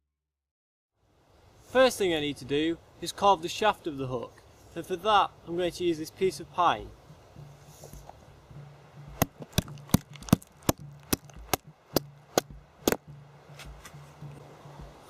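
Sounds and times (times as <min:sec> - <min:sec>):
blade chopping wood: 0:09.1 - 0:14.0.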